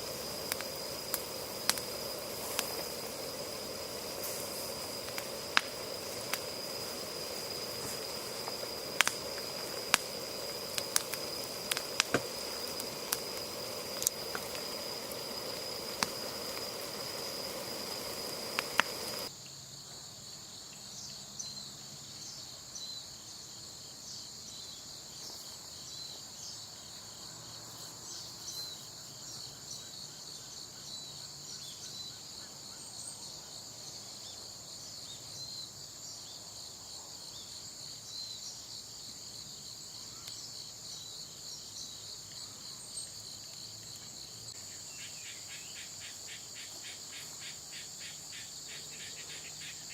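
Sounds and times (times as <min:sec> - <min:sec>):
campfire crackling and popping: 0:00.0 - 0:19.3
insects trilling and chirping: 0:00.0 - 0:49.9.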